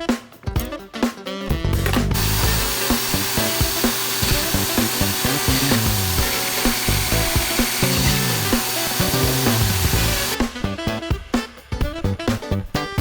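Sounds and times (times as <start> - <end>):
background music: 0.0 - 13.0
chisel rasping on spinning wood: 2.2 - 10.4
electric drill spinning: 2.2 - 10.5.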